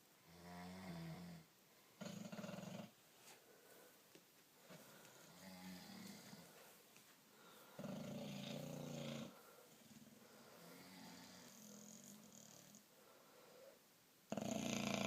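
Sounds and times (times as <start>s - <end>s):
soft rattling snores: 2.0s - 3.0s, 7.8s - 12.8s, 14.3s - 15.0s.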